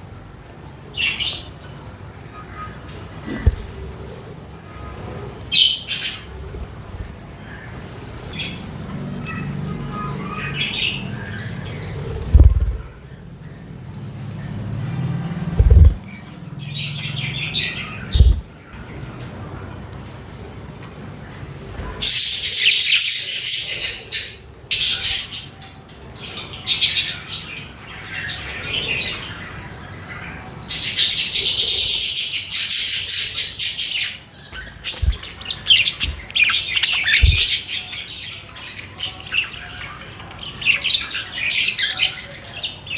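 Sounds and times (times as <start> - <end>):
budgerigars chirping: 15.6 - 18.5, 30.2 - 40.0.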